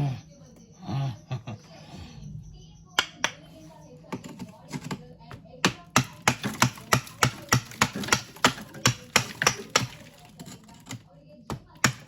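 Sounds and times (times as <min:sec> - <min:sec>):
tool chipping freezer ice: 0:05.6 - 0:12.0.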